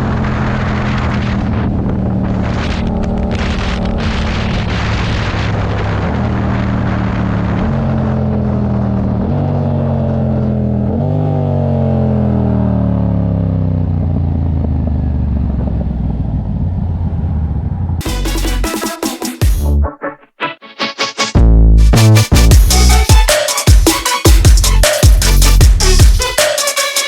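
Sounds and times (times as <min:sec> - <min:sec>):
vehicle engine running under load: 0:00.0 - 0:18.0.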